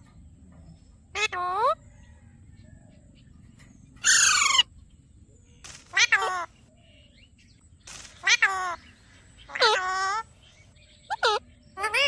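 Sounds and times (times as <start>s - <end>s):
bird calling: 8.1s - 12.0s.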